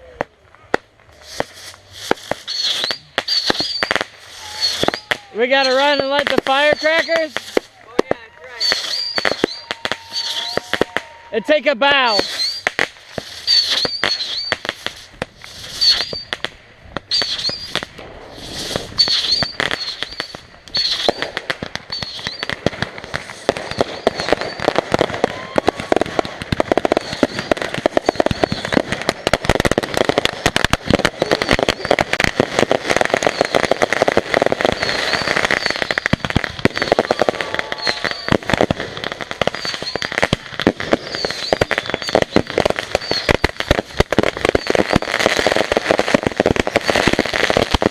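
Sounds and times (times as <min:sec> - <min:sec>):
firecrackers crackling: 0:00.0 - 0:47.9.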